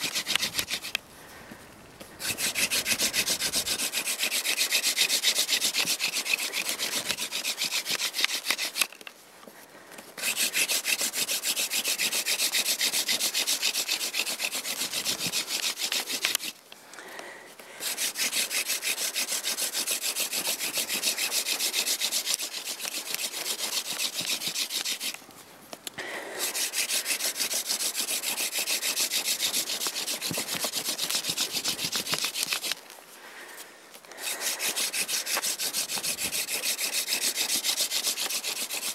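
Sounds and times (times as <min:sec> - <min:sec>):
hand drill rubbing into wood: 0:00.0 - 0:01.1, 0:02.0 - 0:09.2, 0:10.0 - 0:16.7, 0:17.6 - 0:25.3, 0:25.9 - 0:38.9.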